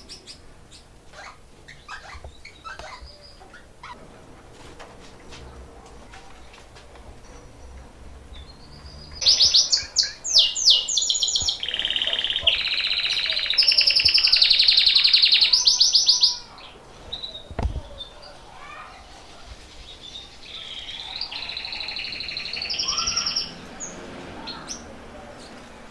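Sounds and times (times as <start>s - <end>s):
canary trilling song: 0.0s - 4.0s, 7.3s - 25.6s
short thump: 17.5s - 18.0s.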